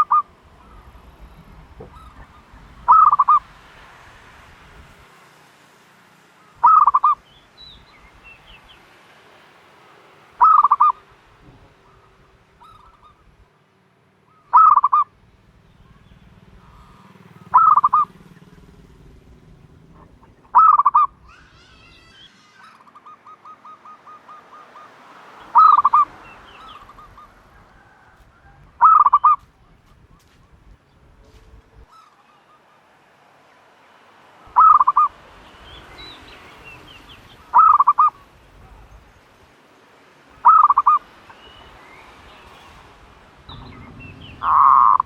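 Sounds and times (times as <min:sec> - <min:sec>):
dove calling: 0:00.0 - 0:05.0, 0:06.4 - 0:33.0, 0:34.5 - 0:45.0.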